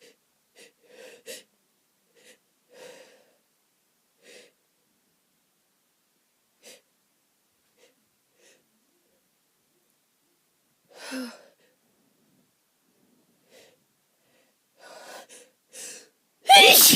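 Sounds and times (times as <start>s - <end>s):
person sniffing: 16.5s - 16.9s.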